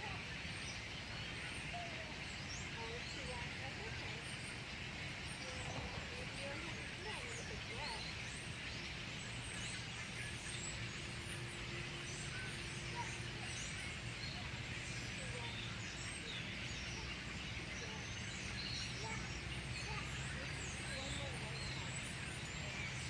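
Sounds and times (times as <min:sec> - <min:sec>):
flock of birds chirping: 0:00.0 - 0:23.0.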